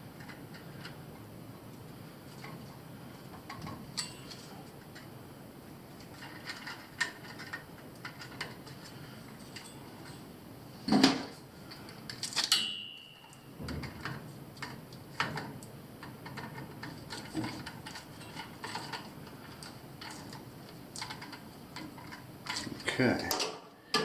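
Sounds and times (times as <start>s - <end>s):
brief metallic ring: 12.6s - 13.2s.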